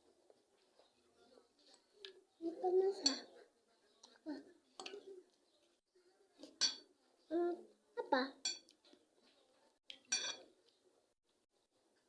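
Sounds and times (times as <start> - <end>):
cutlery clinking against dishes: 2.9 - 3.4, 6.4 - 6.9, 8.4 - 8.9, 9.9 - 10.6.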